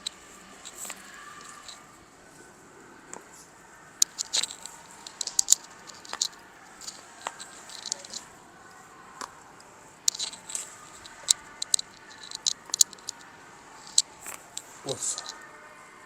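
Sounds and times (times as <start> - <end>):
joints cracking: 0.0 - 1.9, 4.0 - 8.4, 10.0 - 15.4.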